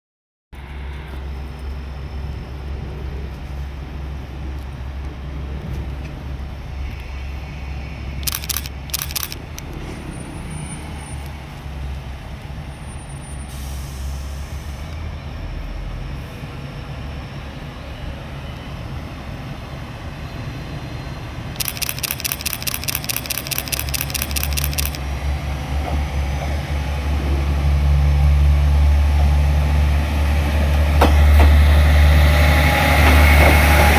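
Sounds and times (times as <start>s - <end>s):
sharp clicks: 8.2s - 9.8s, 21.6s - 25.0s
rapid repeated ringing: 21.6s - 25.0s.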